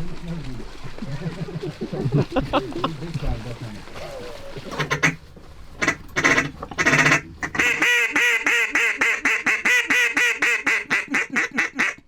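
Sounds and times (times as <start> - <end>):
duck call quacks: 4.6 - 5.2, 5.8 - 12.0.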